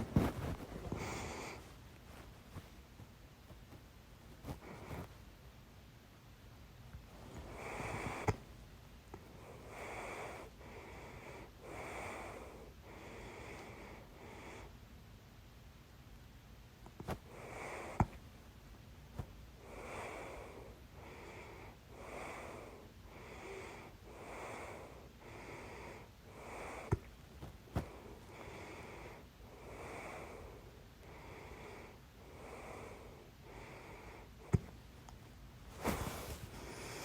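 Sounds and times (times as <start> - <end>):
person breathing: 0.0 - 2.8, 7.2 - 8.4, 9.2 - 14.8, 19.6 - 34.8, 35.7 - 37.0.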